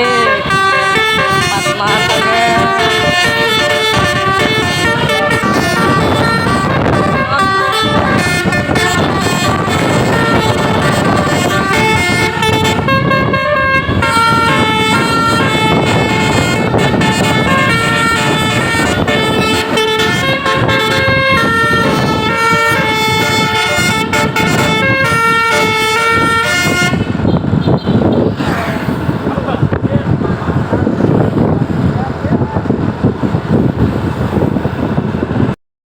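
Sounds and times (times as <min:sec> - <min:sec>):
bus air horn melody: 0:00.0 - 0:28.4
bus and road noise: 0:00.0 - 0:35.6.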